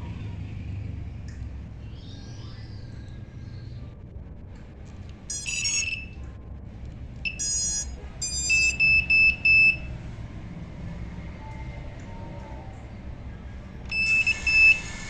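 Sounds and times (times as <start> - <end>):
steady low rumble: 0.0 - 14.8
electronic startup beeps: 5.3 - 6.2, 7.2 - 9.9, 13.9 - 14.9.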